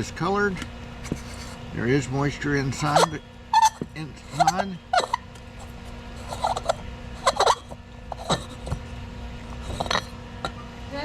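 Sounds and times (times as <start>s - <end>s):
light fixture parts clinking: 2.8s - 8.7s, 9.7s - 10.6s.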